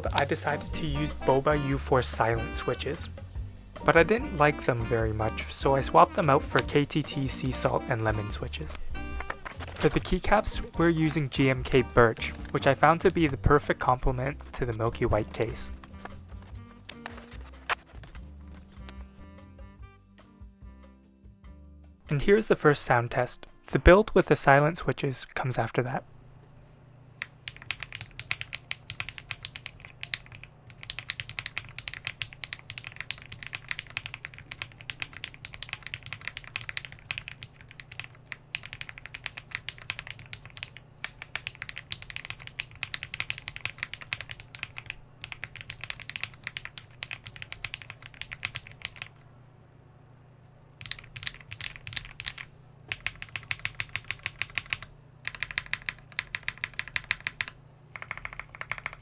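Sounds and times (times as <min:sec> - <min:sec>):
keyboard typing: 0:09.0 - 0:18.2, 0:27.2 - 0:49.2, 0:50.8 - 0:59.0.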